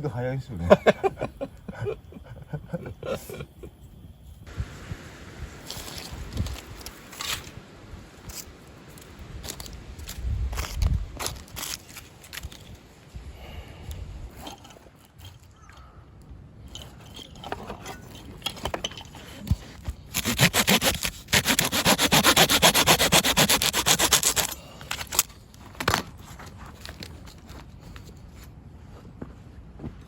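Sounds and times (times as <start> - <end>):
rapid scraping strokes: 20.1 - 24.6.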